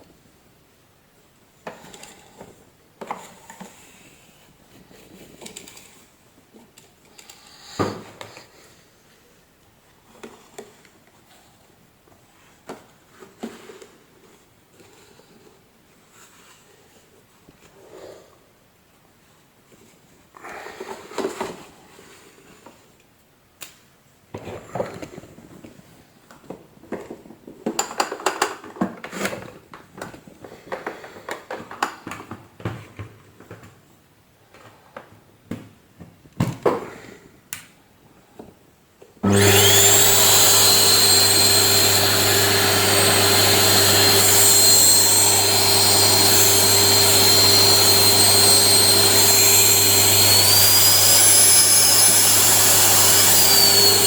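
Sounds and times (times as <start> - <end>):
vacuum cleaner whining: 39.2 - 54.0.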